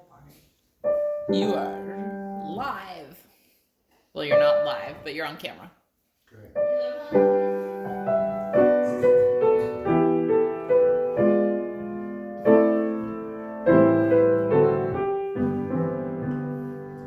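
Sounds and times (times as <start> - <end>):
piano chords: 0.8 - 3.0, 6.6 - 17.0.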